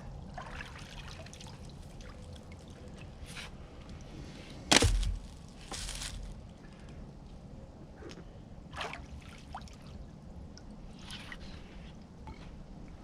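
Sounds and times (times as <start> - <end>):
water trickling and dripping: 0.0 - 4.2, 9.3 - 11.0.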